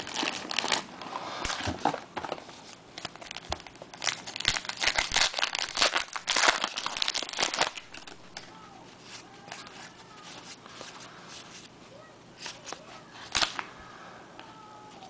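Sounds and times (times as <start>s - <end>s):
wrapper crinkling and tearing: 0.0s - 1.7s, 3.0s - 8.5s, 12.4s - 13.7s.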